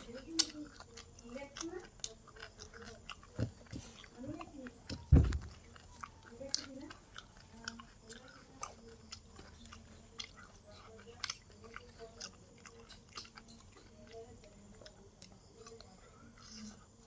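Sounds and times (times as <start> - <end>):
person chewing food: 0.0 - 17.0.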